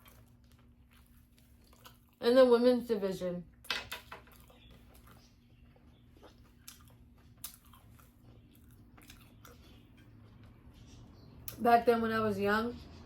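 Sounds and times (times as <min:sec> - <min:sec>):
person chewing: 0:00.0 - 0:02.2, 0:04.2 - 0:11.6.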